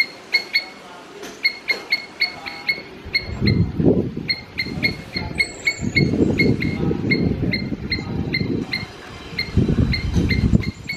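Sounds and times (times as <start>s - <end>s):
squirrel alarm chirps: 0.0s - 0.8s, 1.4s - 10.9s
low rumbling noise: 2.4s - 10.9s.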